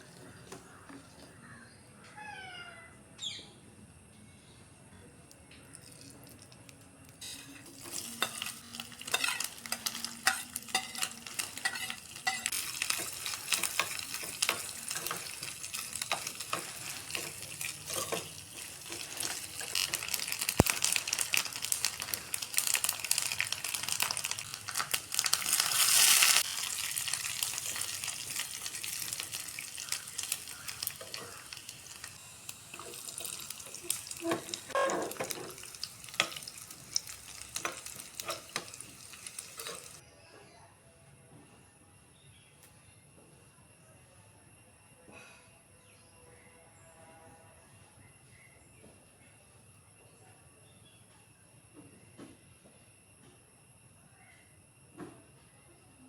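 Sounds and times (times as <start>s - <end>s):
food sizzling in a hot pan: 7.2s - 40.0s.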